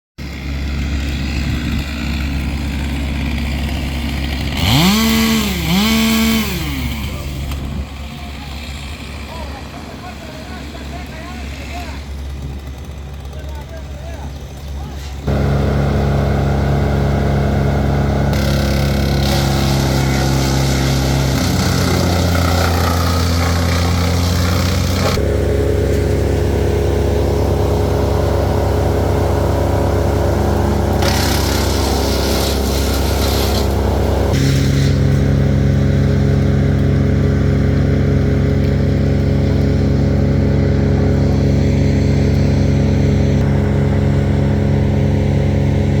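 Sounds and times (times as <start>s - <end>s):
chainsaw engine running: 0.2s - 46.0s
chainsaw cutting hiss: 0.4s - 35.8s.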